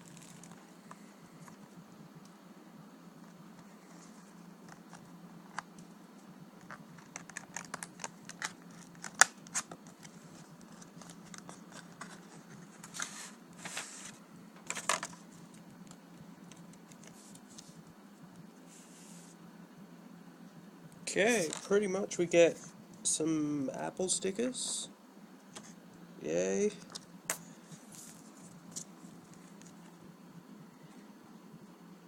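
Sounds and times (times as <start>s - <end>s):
packaging rustling: 6.6s - 15.2s.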